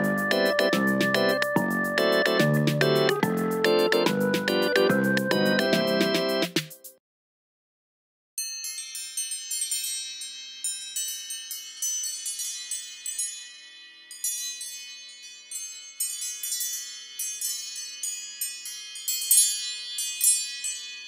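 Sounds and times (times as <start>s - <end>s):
chiming phone ringtone: 0.0s - 4.0s.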